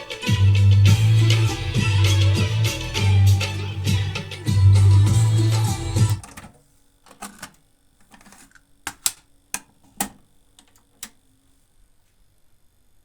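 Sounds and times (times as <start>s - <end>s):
cassette deck mechanical clicks: 5.9s - 11.2s.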